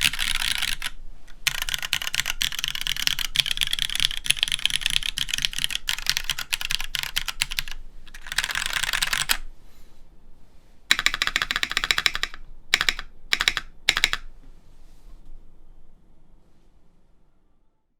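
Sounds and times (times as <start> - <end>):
mechanical keyboard typing: 0.0 - 9.5, 10.9 - 14.3.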